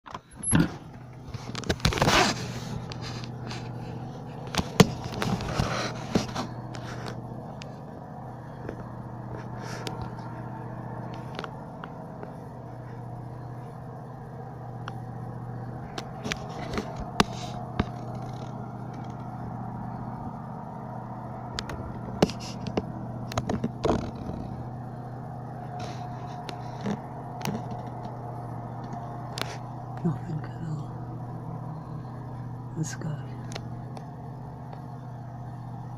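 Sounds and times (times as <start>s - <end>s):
steady low hum: 0.1s - 35.9s
device handling scrapes and clicks: 0.6s - 7.7s, 15.9s - 19.3s, 21.6s - 24.6s, 25.7s - 28.2s, 28.8s - 29.7s.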